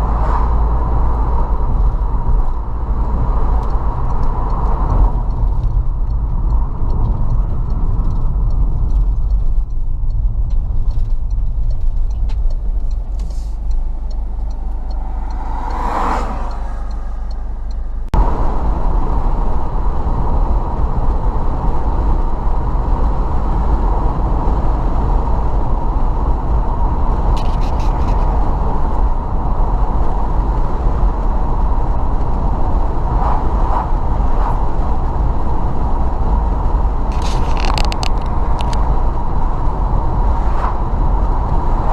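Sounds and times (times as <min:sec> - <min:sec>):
car engine and tyre rumble: 0:00.0 - 0:41.9
vehicle passing: 0:13.2 - 0:18.1, 0:32.8 - 0:36.5.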